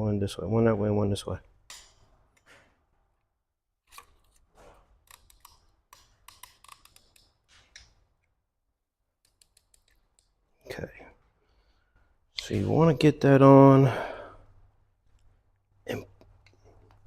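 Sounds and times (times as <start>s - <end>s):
metallic clicks and scraping: 3.8s - 8.0s, 9.2s - 10.4s.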